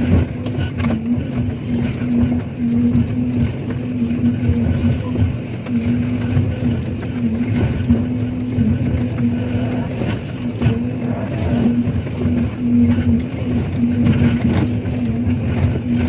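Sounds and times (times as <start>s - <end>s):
machinery humming: 0.0s - 16.0s.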